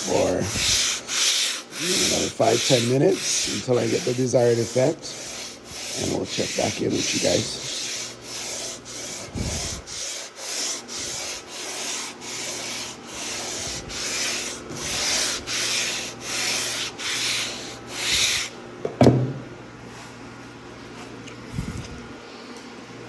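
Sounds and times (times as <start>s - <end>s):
sandpaper rubbing on wood: 0.0s - 18.5s
single knock: 18.9s - 19.4s.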